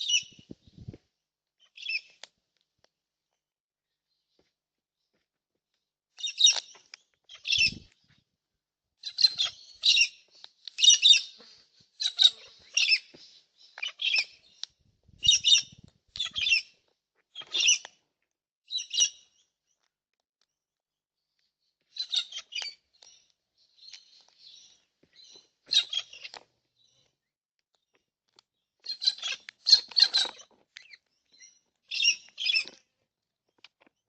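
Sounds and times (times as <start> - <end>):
birds chirping: 0.0 - 0.9, 1.6 - 2.3, 6.2 - 8.1, 9.0 - 18.0, 21.8 - 27.9, 28.6 - 32.8.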